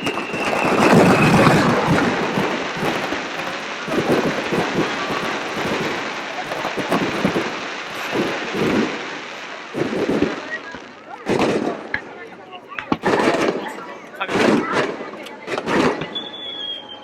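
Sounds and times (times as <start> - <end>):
firework whistle: 0.0 - 10.8, 16.0 - 17.0
firework bursts: 0.0 - 17.0
fireworks crackling: 0.0 - 17.0.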